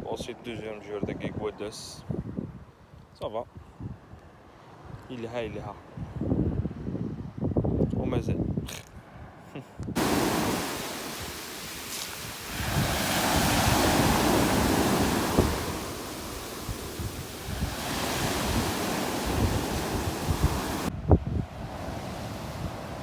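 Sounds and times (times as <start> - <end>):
wind buffeting microphone: 10.0 - 23.0.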